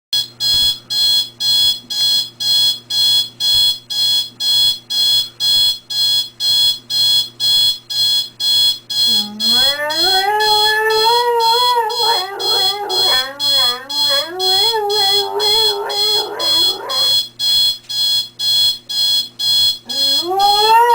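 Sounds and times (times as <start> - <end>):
alarm clock beeping: 0.2 - 20.9
dog howling: 9.2 - 17.2, 19.9 - 20.9.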